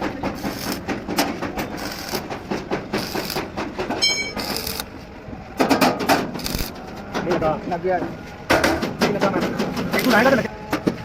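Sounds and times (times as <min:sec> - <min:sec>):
high-pitched squeak: 0:04.0 - 0:04.8.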